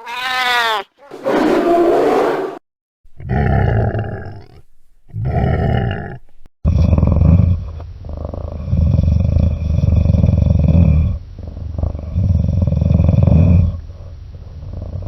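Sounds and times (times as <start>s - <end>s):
rough growl: 3.2s - 15.0s
deep rumbling roars: 3.3s - 15.0s.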